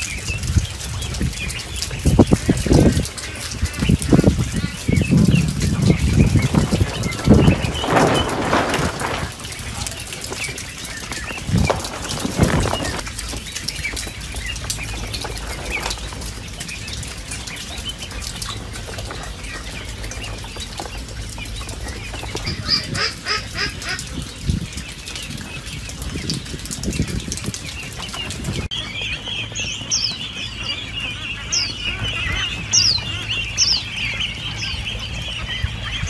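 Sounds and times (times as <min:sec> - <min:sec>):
chicks peeping: 0:00.0 - 0:36.0
poultry flapping wings: 0:02.2 - 0:16.7.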